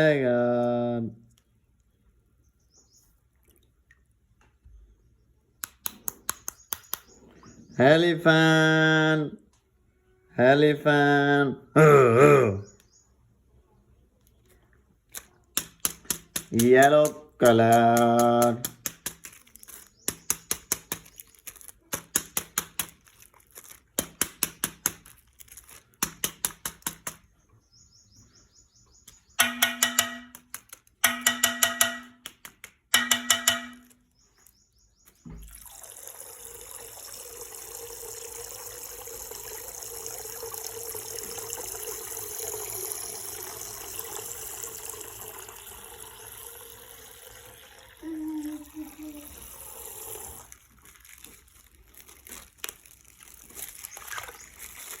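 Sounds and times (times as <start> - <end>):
water gushing from bag: 19.1 - 26.2, 35.4 - 55.0.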